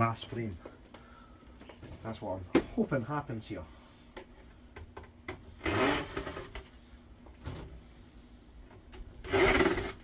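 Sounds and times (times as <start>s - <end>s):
cordless drill whirring: 5.6s - 6.6s, 9.2s - 10.0s.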